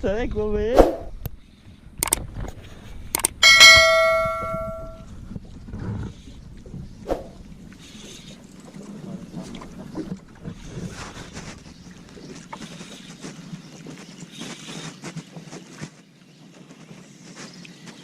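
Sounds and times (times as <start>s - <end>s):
water noise: 3.0s - 14.0s
boat engine hum: 3.4s - 14.0s.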